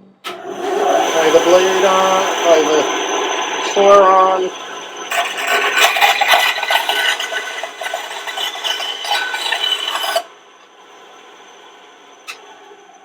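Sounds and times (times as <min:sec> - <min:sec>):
bandsaw cutting wood: 0:00.3 - 0:10.3
bandsaw running free: 0:00.3 - 0:10.3.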